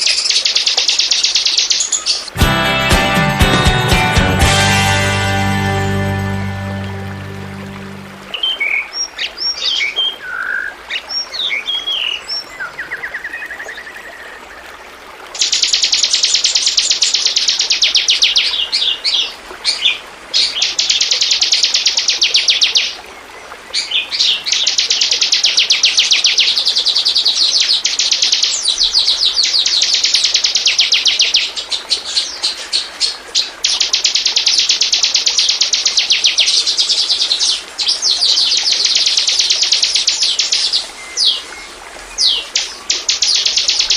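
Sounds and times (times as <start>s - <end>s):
bird chirping and trilling: 0.0s - 2.3s, 23.8s - 43.9s.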